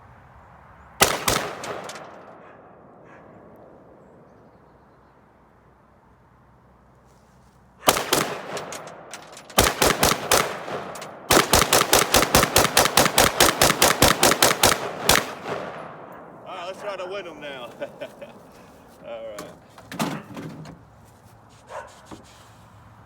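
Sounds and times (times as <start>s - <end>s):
rifle shots: 1.0s - 3.6s, 7.8s - 17.6s.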